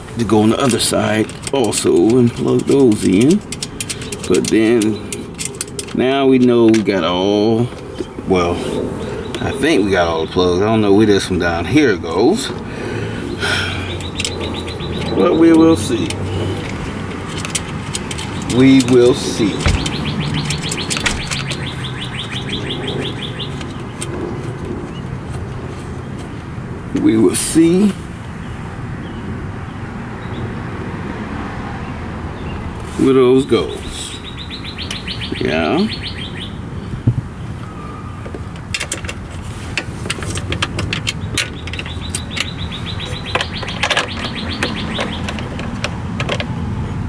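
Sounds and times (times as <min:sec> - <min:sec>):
birds chirping: 0:00.0 - 0:30.8, 0:31.8 - 0:39.2, 0:40.0 - 0:47.0
songbird trilling chirps: 0:13.2 - 0:25.1, 0:33.6 - 0:38.3, 0:41.2 - 0:45.8
plastic connectors clicking and rattling: 0:15.6 - 0:21.6.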